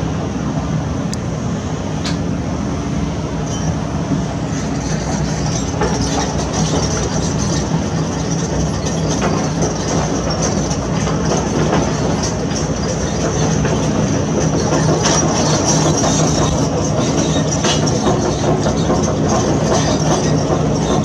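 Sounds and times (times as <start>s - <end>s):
diesel engine running under load: 0.0s - 21.0s.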